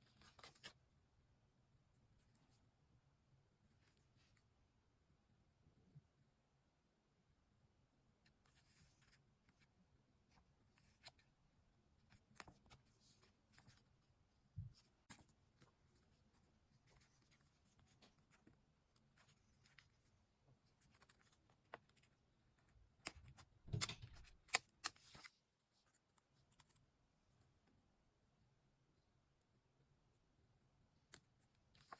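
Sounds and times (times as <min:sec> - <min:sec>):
paper rustling: 0:14.7 - 0:22.2.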